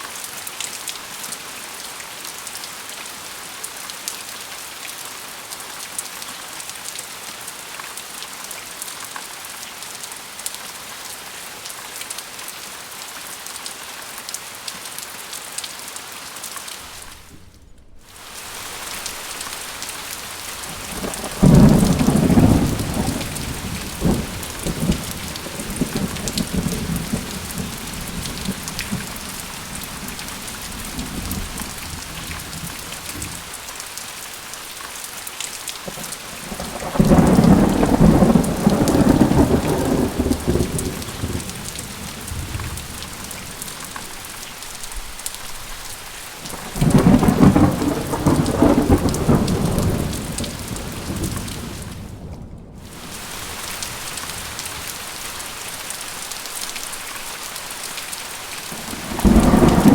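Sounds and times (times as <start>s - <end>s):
steady rain: 0.0s - 59.9s
thunder rumbling: 16.8s - 33.9s, 35.9s - 55.9s, 58.6s - 59.9s.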